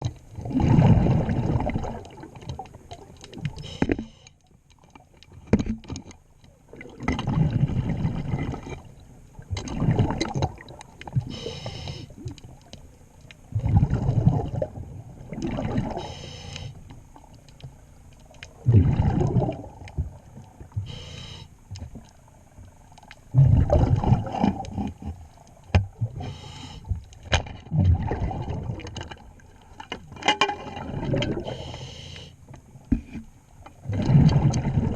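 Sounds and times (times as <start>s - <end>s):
exhaled bubbles rumbling underwater: 0.0s - 4.2s, 4.8s - 34.9s
regulator inhalation hiss: 11.3s - 12.2s, 16.0s - 16.8s, 20.8s - 21.6s, 26.2s - 26.9s, 31.5s - 32.4s.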